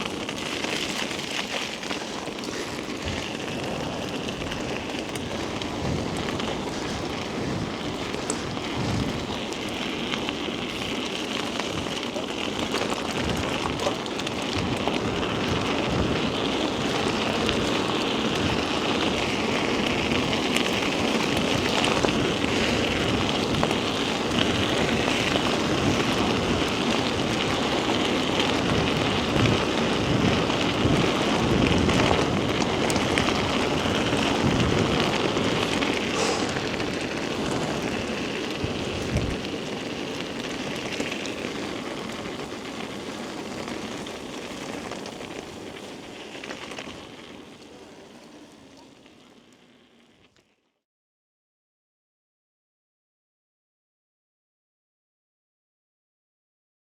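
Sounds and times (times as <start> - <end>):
bike knocking and rattling: 0.0 - 48.2
tyres rolling through wet mud: 0.0 - 50.4.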